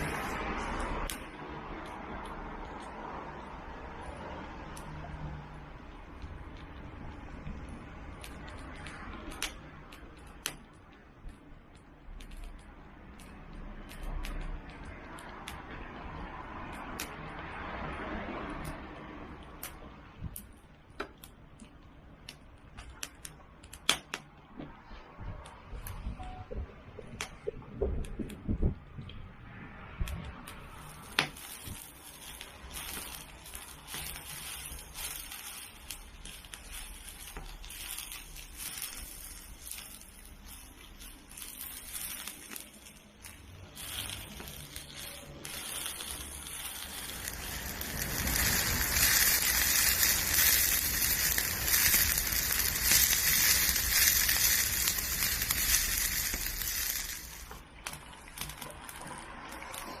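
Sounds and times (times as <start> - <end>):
dumplings sizzling in a pan: 0.0 - 11.0, 30.5 - 60.0
wood fire crackling: 0.0 - 60.0.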